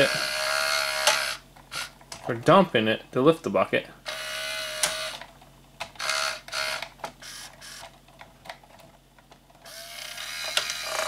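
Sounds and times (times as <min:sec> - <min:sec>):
small electric motors whirring: 0:00.0 - 0:01.9, 0:04.1 - 0:05.2, 0:06.0 - 0:07.9, 0:09.6 - 0:11.0.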